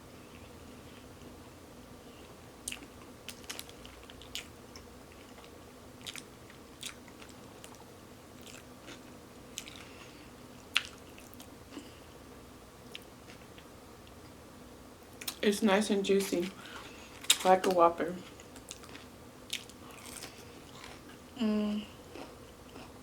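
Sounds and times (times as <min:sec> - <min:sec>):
person chewing food: 0:02.2 - 0:12.2, 0:18.2 - 0:21.2, 0:22.0 - 0:23.0.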